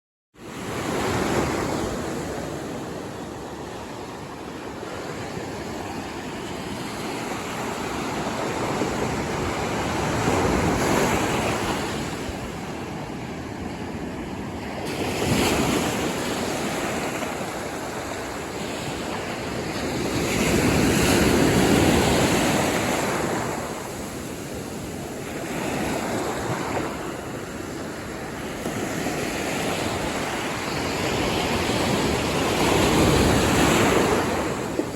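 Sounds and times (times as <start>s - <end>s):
ocean surf breaking on beach: 0.4s - 34.9s.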